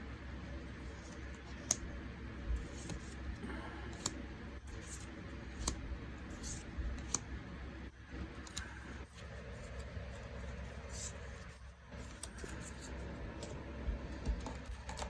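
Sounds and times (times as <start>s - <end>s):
low steady hum: 0.0s - 15.0s
cards clicking and snapping: 1.1s - 1.8s, 3.9s - 5.8s, 6.4s - 7.3s, 12.0s - 15.0s.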